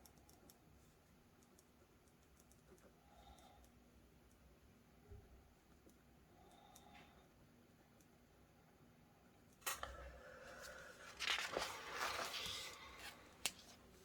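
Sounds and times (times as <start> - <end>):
rustling and handling: 10.4 - 14.0.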